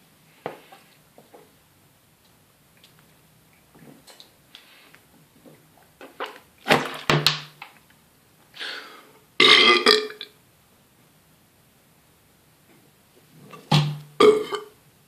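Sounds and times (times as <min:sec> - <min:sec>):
person belching: 0:09.4 - 0:10.3, 0:14.2 - 0:14.8.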